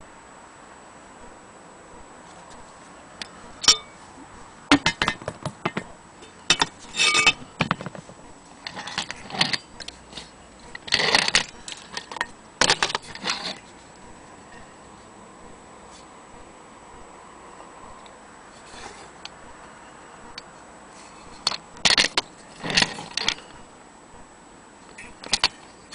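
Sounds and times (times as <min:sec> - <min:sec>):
clock glass and metal clinks: 0:03.6 - 0:04.0.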